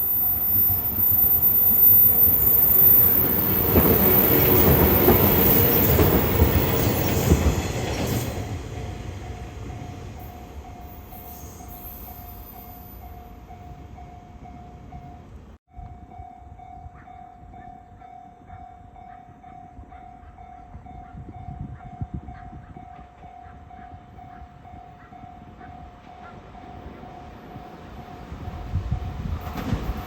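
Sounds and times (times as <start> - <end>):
level crossing warning bell ringing: 0.0 - 6.8
low rumble of a train: 0.0 - 30.0.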